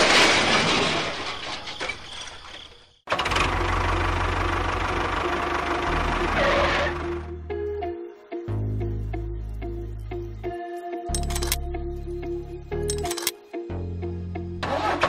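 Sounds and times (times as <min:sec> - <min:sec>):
crash: 0:00.0 - 0:02.8.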